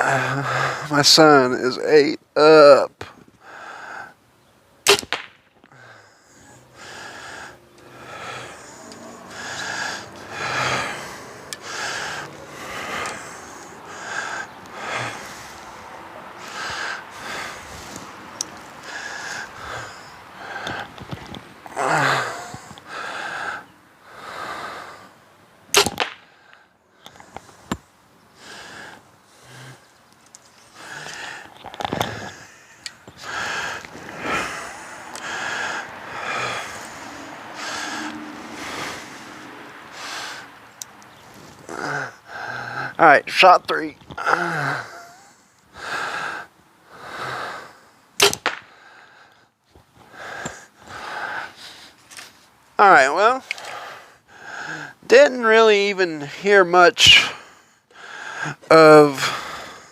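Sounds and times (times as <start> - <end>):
person breathing heavily: 0.0 - 1.5, 2.4 - 4.2, 5.7 - 25.3, 26.2 - 43.1, 44.2 - 55.6, 57.1 - 59.9
sharp click: 4.9 - 5.4, 25.7 - 26.2, 48.2 - 48.7
faint clicks: 30.1 - 33.2.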